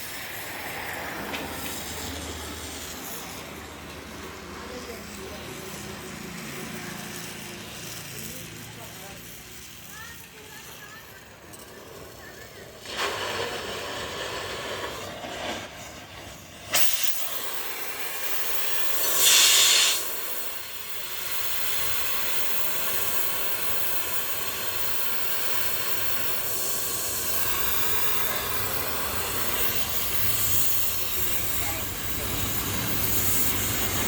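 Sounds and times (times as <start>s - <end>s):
rush of gas: 0.0s - 34.0s
welding torch hissing: 0.0s - 34.0s
sharp crack: 12.8s - 18.4s.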